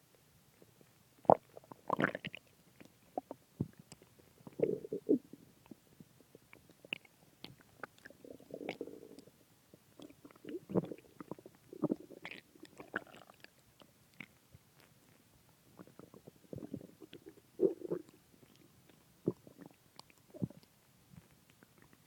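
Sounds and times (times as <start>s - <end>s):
stomach gurgling: 1.2s - 22.0s.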